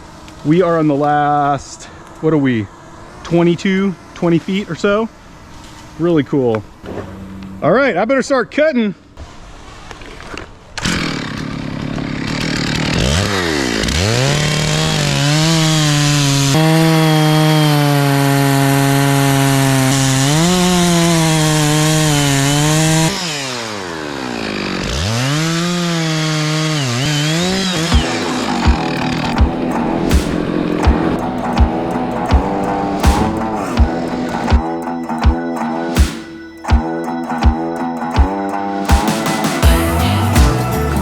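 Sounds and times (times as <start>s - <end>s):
chainsaw cutting wood: 10.7s - 37.6s, 38.2s - 41.0s.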